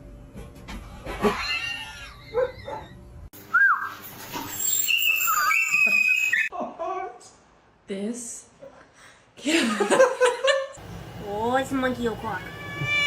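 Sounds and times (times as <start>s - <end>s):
cat meowing: 12.4s - 13.0s.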